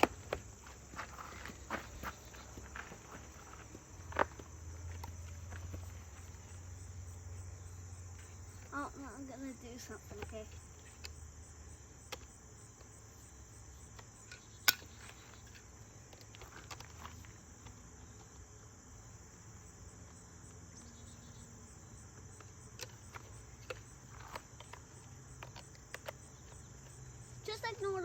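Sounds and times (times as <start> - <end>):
plastic toy gun clicks: 14.0 - 14.9.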